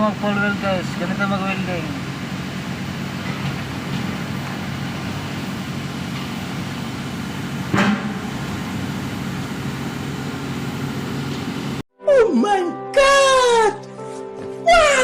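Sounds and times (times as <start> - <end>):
low machine hum: 0.0 - 11.8.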